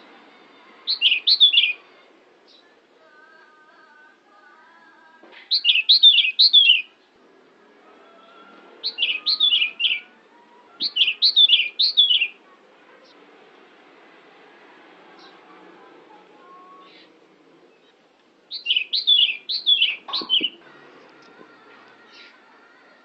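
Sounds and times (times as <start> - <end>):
bird singing chirpy notes: 0.6 - 1.9, 5.4 - 7.1, 8.8 - 10.2, 10.8 - 12.4, 16.7 - 20.6.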